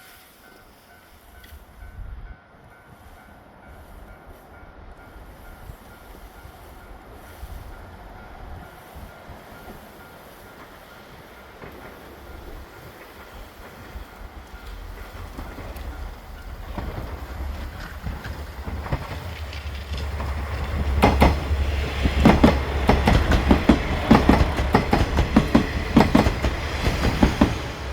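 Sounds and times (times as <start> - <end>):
diesel railcar rumble: 0.1 - 27.9
wheels clattering over rail joints: 10.5 - 27.9.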